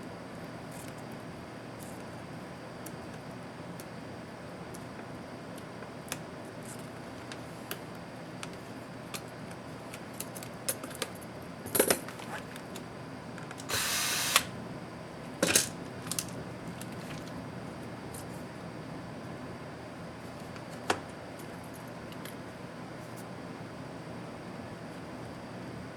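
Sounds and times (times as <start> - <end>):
short steady whirr: 13.7 - 14.6.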